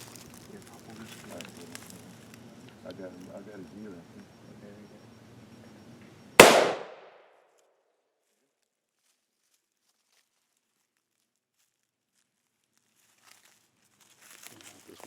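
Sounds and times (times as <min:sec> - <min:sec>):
rifle shot: 0:06.4 - 0:07.2.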